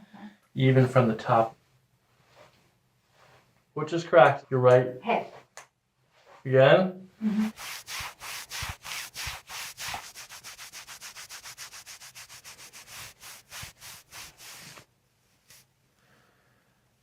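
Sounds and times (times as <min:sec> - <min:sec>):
hand rubbing on body: 0:07.2 - 0:15.7.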